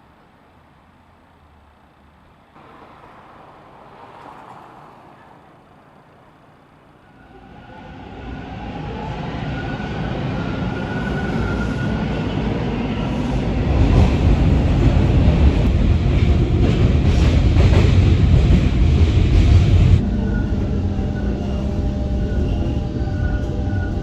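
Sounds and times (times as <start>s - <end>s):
train rumbling past: 2.4s - 24.0s
rail clatter: 2.6s - 7.4s.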